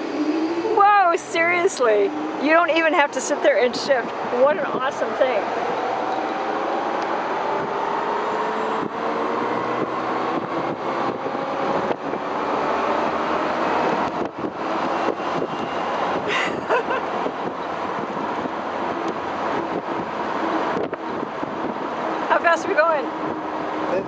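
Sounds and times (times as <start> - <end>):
road and wind noise: 0.0 - 24.0
electric drivetrain whining: 5.0 - 16.3.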